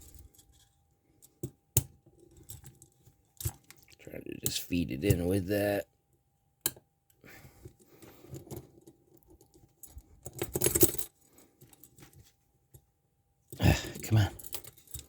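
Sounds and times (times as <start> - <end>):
handcuff chain clinking: 8.2 - 12.2, 13.6 - 15.0.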